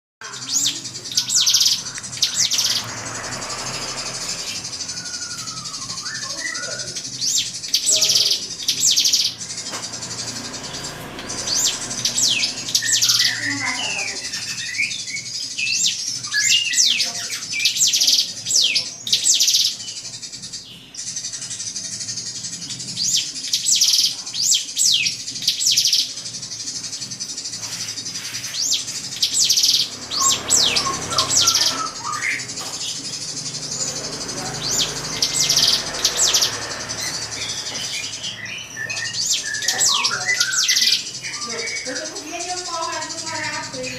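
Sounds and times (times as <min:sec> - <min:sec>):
bird whistling and warbling: 0:00.2 - 0:20.0, 0:27.6 - 0:43.9.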